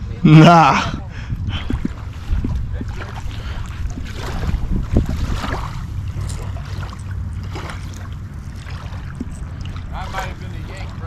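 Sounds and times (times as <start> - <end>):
low rumble: 0.0 - 11.0
wind buffeting microphone: 0.0 - 11.0.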